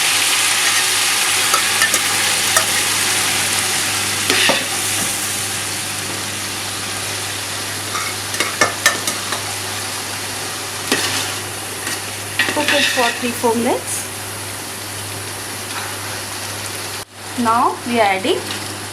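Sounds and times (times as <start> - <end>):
gravy sizzling in a pan: 0.0 - 18.9
spoon scraping a pan: 4.3 - 5.1, 7.9 - 9.5, 10.9 - 13.4.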